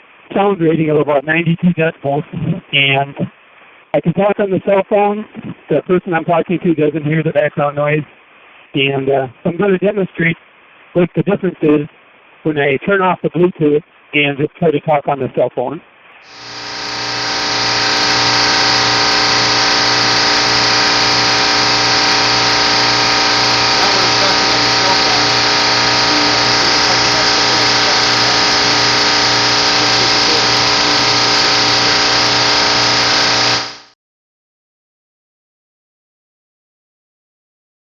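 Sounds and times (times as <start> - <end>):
chiller machinery humming: 16.3 - 34.0.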